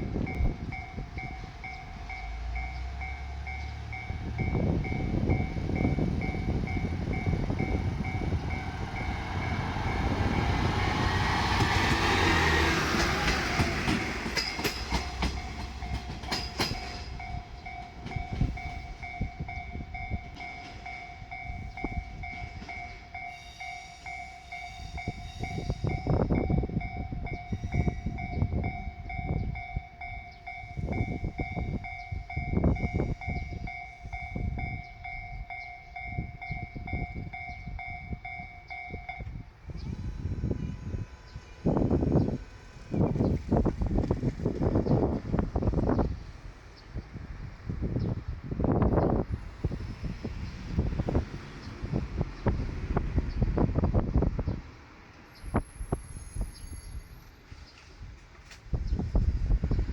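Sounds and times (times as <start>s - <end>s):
level crossing warning bell: 0.0s - 43.2s
diesel railcar engine and wheels: 0.0s - 59.9s.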